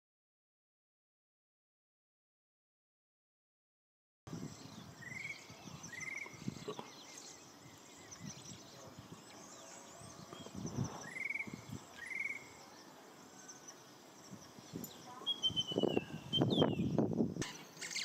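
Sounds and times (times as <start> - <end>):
insect chirping: 4.3 - 18.0
bird buzzy upswept calls: 9.0 - 18.0.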